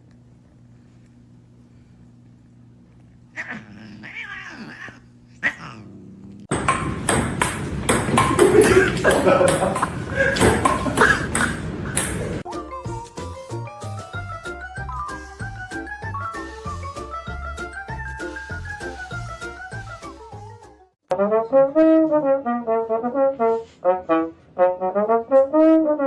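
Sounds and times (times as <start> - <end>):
cat yowling: 3.3 - 6.0
sharp knocks: 6.5 - 12.4.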